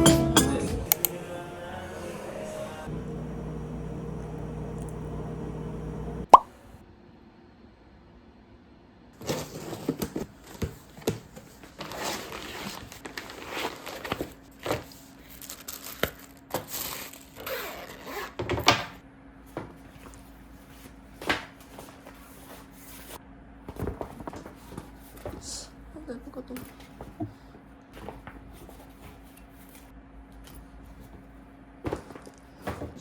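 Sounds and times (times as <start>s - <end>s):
packaging rustling and crinkling: 9.2s - 18.4s.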